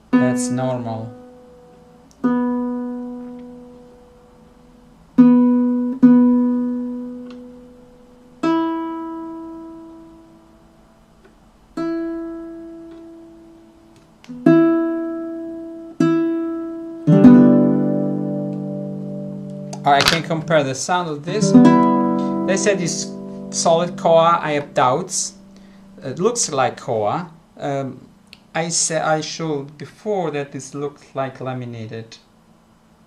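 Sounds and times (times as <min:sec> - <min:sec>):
baritone ukulele notes plucked: 0:14.3 - 0:20.6, 0:21.2 - 0:25.5.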